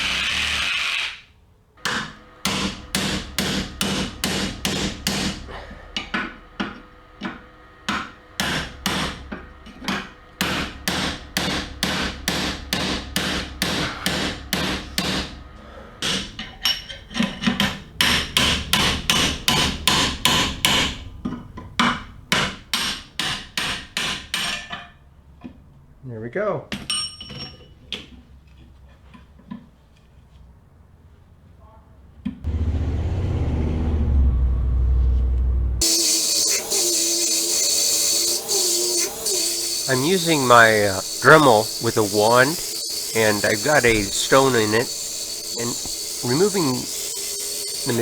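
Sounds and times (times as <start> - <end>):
hammer blows on metal: 35.8 - 48.0
reciprocating saw running: 35.8 - 48.0.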